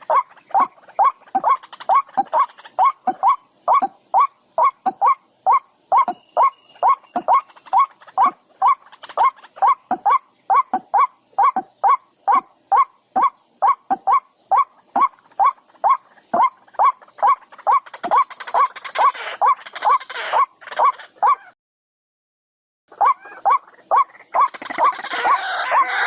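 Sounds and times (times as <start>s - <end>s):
rustling hiss: 0.0s - 19.4s
bird honking calls: 0.0s - 21.6s, 22.9s - 26.0s.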